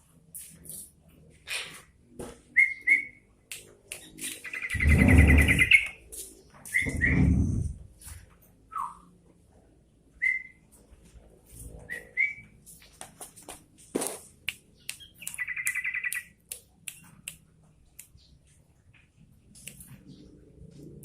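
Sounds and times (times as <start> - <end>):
bird chattering trill: 4.1 - 6.0, 14.8 - 16.3
bulbul whistling: 4.4 - 6.0, 6.7 - 7.3, 10.2 - 10.6
sharp clicks: 14.4 - 17.4.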